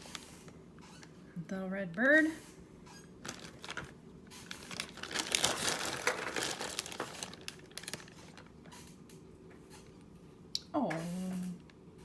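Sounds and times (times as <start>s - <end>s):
packaging crinkling: 3.2s - 8.9s.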